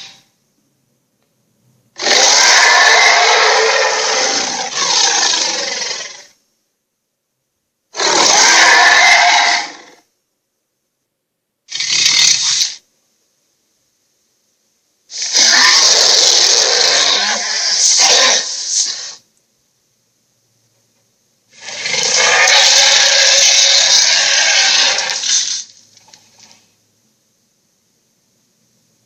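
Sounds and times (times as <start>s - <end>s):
dragon roar: 2.0s - 6.4s, 8.0s - 10.0s, 15.2s - 19.2s, 21.6s - 25.5s.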